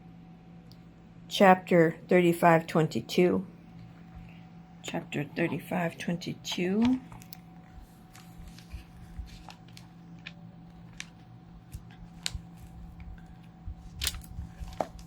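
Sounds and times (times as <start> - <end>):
faint hum: 0.0 - 15.0
pages turning: 6.8 - 15.0.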